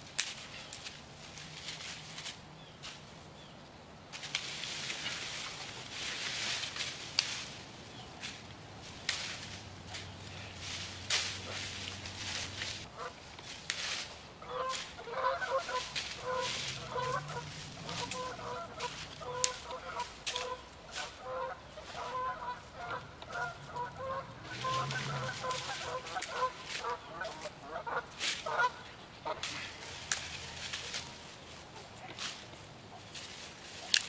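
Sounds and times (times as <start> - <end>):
birds calling: 9.8 - 13.3, 14.4 - 30.6.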